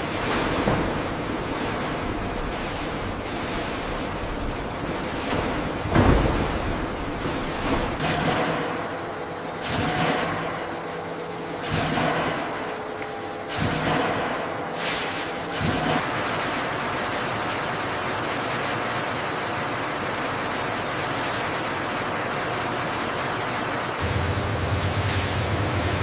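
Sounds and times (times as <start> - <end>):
machinery hissing bursts: 20.9 - 26.0
steady rush with high whine: 21.4 - 26.0
low hum: 24.0 - 26.0.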